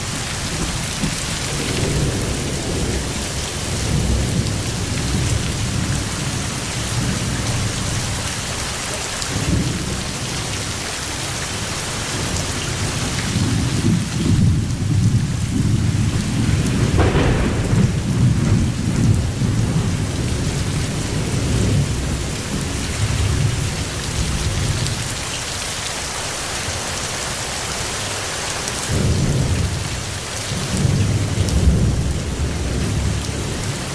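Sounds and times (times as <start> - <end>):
thunder rolling: 0.0 - 7.6, 13.3 - 23.6
heavy rain hissing: 0.0 - 33.9.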